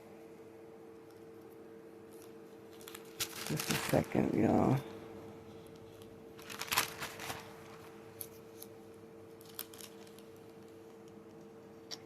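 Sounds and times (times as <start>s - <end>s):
faint steady hum: 0.0s - 12.0s
paper pages rustling: 2.1s - 4.3s, 5.5s - 8.7s, 9.4s - 10.8s.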